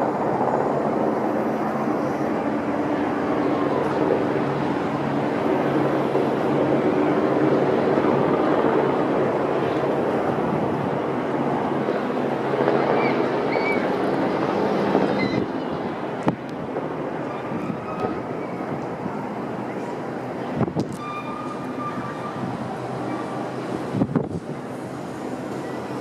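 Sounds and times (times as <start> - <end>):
engine drone with rushing noise: 0.0 - 26.0.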